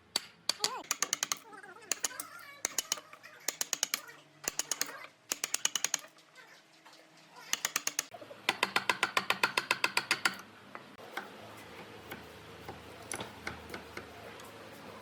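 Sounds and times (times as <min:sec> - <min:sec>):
fast mechanical clicks: 0:00.2 - 0:06.1, 0:07.5 - 0:10.4.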